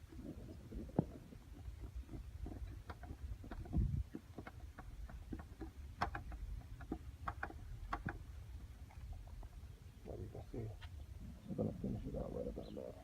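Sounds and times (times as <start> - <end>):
clicks and light taps: 2.1 - 8.2.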